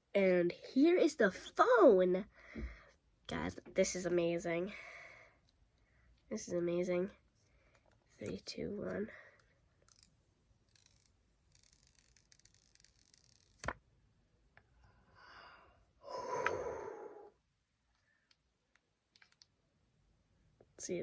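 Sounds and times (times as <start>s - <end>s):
breathy sigh: 15.1s - 17.4s.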